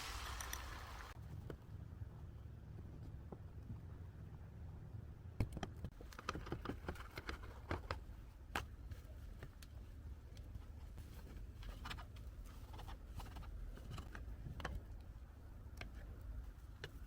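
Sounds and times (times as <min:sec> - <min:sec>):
low steady hum: 0:00.0 - 0:17.0
light clicks and knocks of handling: 0:05.4 - 0:17.0.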